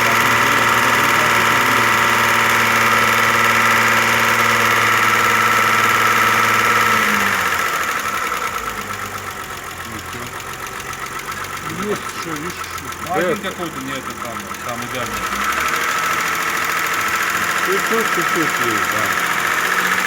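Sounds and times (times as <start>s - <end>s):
car engine running: 0.0s - 20.0s
valve-train ticking: 0.0s - 20.0s.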